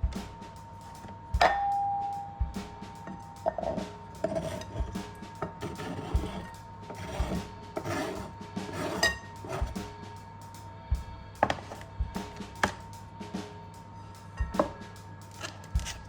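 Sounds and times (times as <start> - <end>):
dishes and utensils knocking: 1.4 - 1.8, 3.4 - 9.8.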